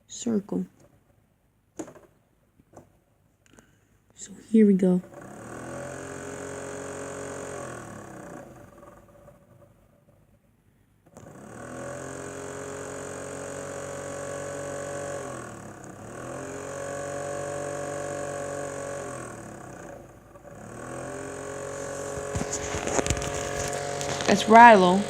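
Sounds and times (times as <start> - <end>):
fan motor humming: 5.0 - 10.0, 11.0 - 25.0.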